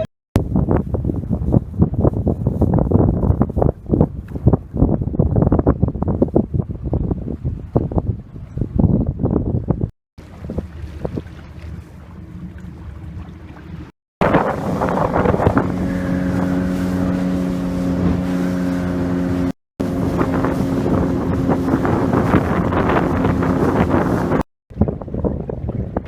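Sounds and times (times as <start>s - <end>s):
wind buffeting microphone: 0.0s - 26.0s
motorboat engine droning: 10.2s - 24.4s
rushing water: 10.2s - 26.0s.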